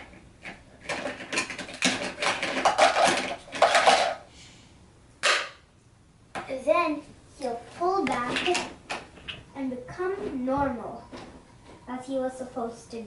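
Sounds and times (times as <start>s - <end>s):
toy rocks clattering into truck bed: 0.9s - 4.2s.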